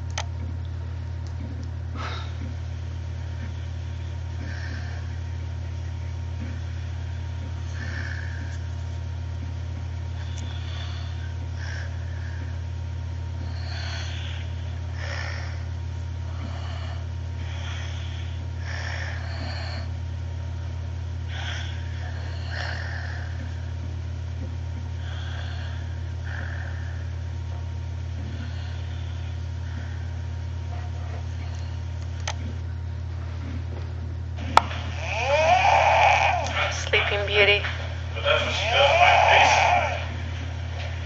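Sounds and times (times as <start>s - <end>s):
low hum: 0.0s - 41.0s
person snoring: 4.4s - 5.2s, 21.3s - 23.7s, 34.8s - 36.7s, 38.5s - 40.2s.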